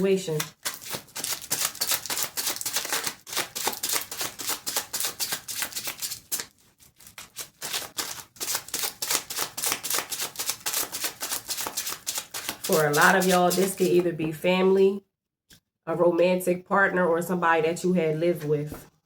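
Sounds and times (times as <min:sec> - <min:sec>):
cards being shuffled: 0:00.4 - 0:14.0.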